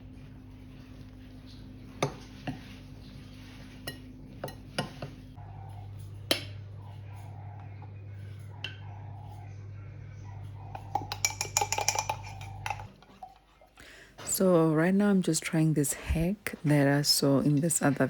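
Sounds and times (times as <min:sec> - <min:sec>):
steady low hum: 0:00.0 - 0:13.3
utensils clinking against dishes: 0:10.7 - 0:13.4.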